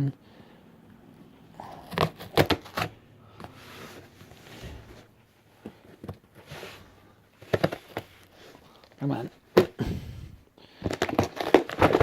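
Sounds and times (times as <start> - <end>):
packaging rustling: 10.7 - 12.0.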